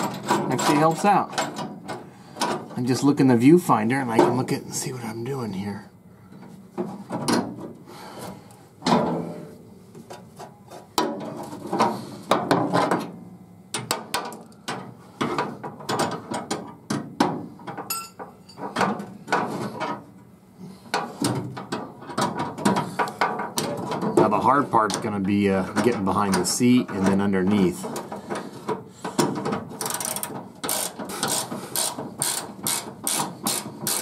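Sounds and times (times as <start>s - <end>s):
socket ratchet clicking: 29.8s - 34.0s.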